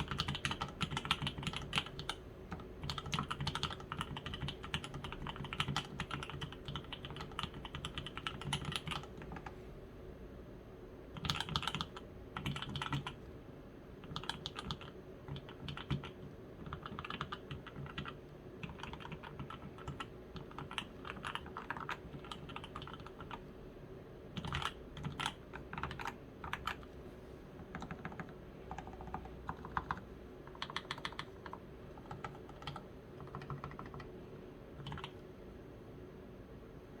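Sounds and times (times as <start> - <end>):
keyboard typing: 0.0 - 9.6, 11.2 - 13.2, 14.0 - 23.4, 24.4 - 27.0, 27.6 - 34.1, 34.8 - 35.2.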